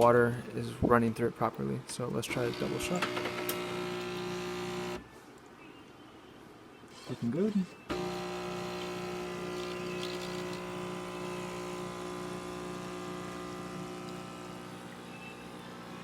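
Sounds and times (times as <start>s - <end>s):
espresso machine pump humming: 2.3s - 5.1s, 7.9s - 16.0s.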